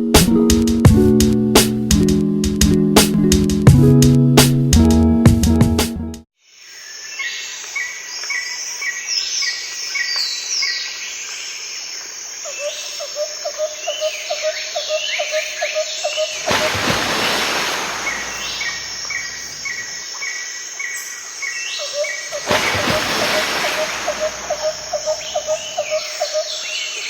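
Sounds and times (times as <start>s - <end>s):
insects calling: 6.4s - 27.0s
birds chirping and whistling: 17.9s - 19.8s
fast pulsing call: 22.4s - 25.9s.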